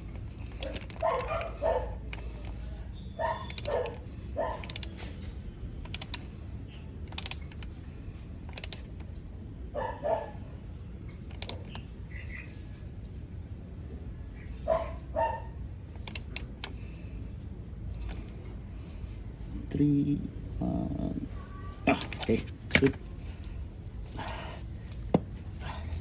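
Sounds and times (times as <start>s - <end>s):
sharp clicks and knocks: 0.0s - 2.7s
dog barking: 0.6s - 2.0s, 3.2s - 4.8s, 9.8s - 10.5s, 14.6s - 15.6s.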